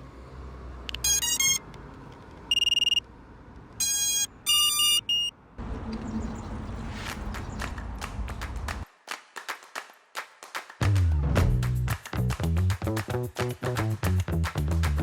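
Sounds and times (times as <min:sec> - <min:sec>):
electronic beeps and tones: 0:01.0 - 0:01.6, 0:03.8 - 0:05.3.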